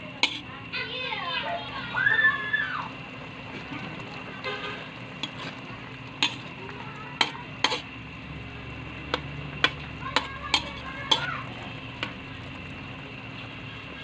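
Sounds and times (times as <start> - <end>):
cooking utensil knocking against pan: 9.1 - 11.3.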